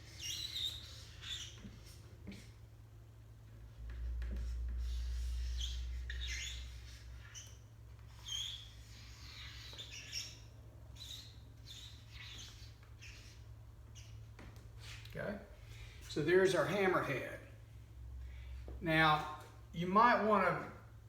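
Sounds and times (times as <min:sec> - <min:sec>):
pen squeaking on paper: 0:00.0 - 0:02.7, 0:03.5 - 0:15.1.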